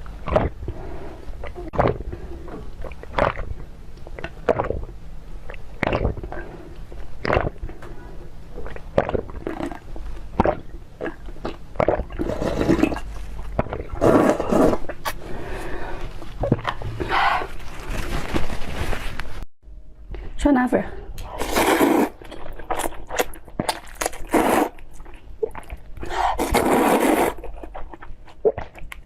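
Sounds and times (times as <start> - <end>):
wet chewing and smacking: 22.1 - 29.0.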